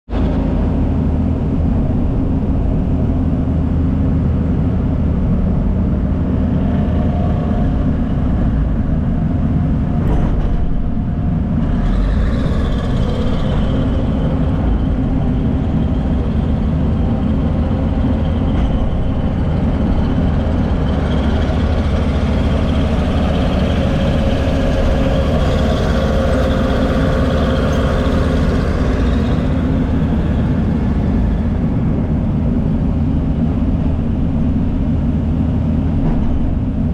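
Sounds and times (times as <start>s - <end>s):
diesel machinery engine rumble: 0.1s - 36.9s.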